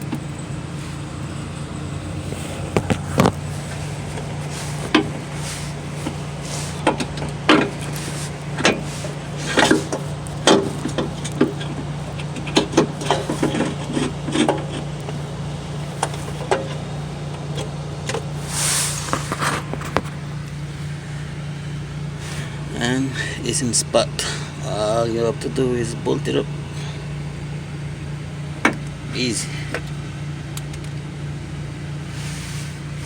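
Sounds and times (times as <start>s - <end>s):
low hum: 0.0s - 33.0s
metal scrape: 2.2s - 11.8s, 18.3s - 21.0s
clunks and knocks of starter motor: 2.2s - 18.4s, 19.1s - 20.7s, 25.9s - 31.1s.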